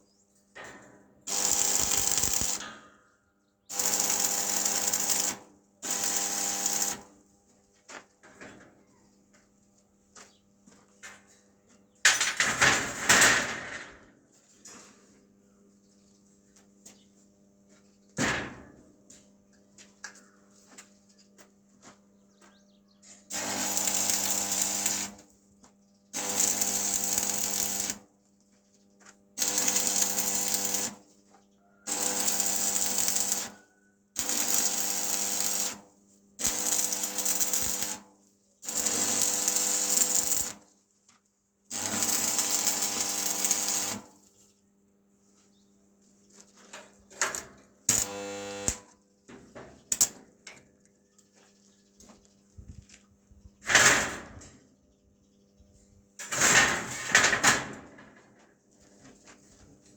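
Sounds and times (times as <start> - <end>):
loud hissing machine: 1.3 - 2.6.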